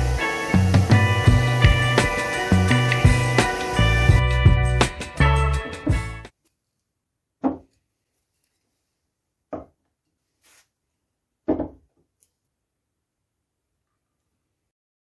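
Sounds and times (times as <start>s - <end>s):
wooden object knocking: 11.5s - 11.9s.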